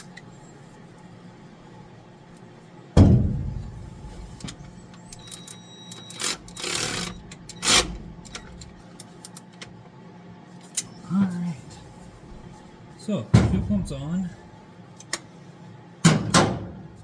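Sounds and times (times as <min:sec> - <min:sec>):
loud knock with ringing tail: 0:03.0 - 0:04.0
small clicks of tools: 0:04.4 - 0:09.7, 0:10.6 - 0:10.9, 0:15.0 - 0:15.3.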